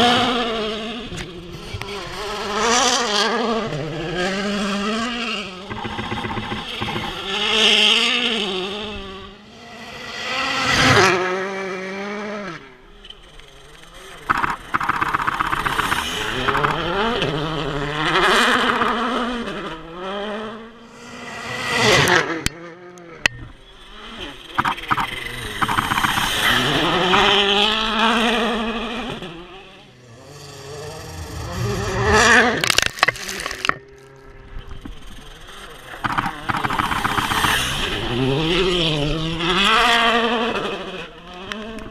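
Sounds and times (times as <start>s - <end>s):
rally car engine revving: 0.0s - 41.9s
sharp cracks: 14.2s - 17.3s, 24.4s - 27.4s, 35.9s - 38.0s.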